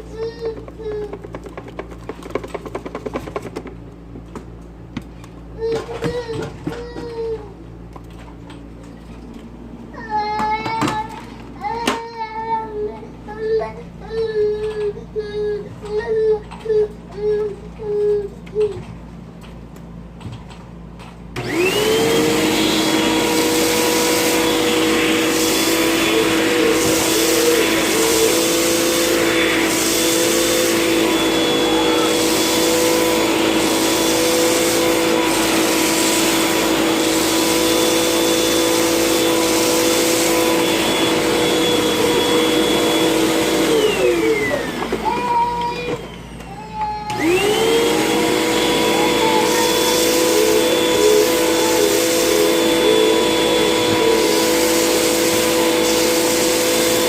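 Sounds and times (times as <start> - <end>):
vacuum cleaner motor whine: 21.3 - 57.0.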